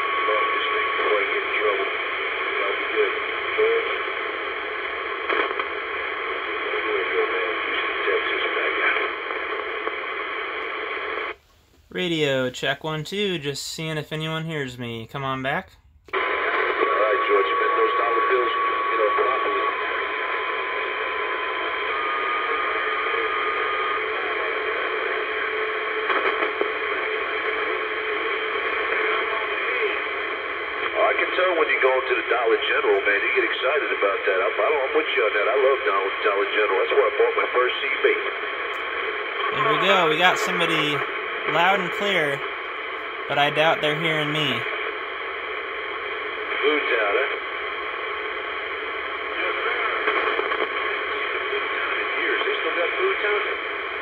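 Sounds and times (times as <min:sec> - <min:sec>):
radio static hiss: 0:00.0 - 0:54.0
faint distant voice on radio: 0:00.1 - 0:04.1, 0:06.6 - 0:09.1, 0:16.2 - 0:20.0
short radio crackles: 0:00.7 - 0:12.0, 0:36.8 - 0:45.1, 0:45.8 - 0:52.3.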